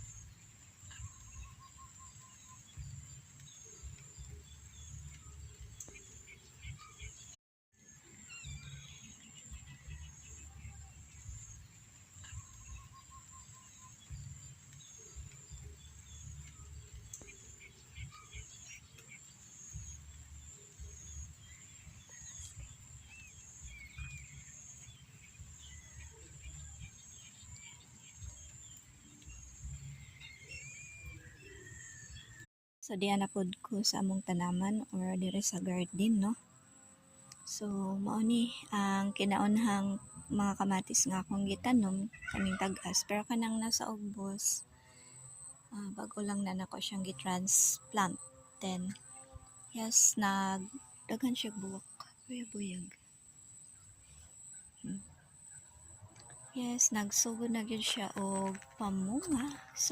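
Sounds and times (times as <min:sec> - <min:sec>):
insects buzzing: 0:34.9 - 0:42.6, 0:44.7 - 0:59.9.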